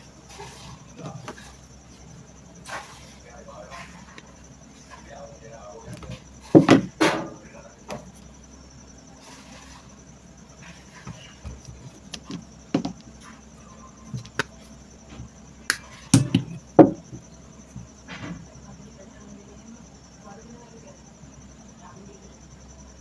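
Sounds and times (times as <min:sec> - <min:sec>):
clicks and knocks handling tools: 0:11.0 - 0:13.1, 0:14.1 - 0:17.9.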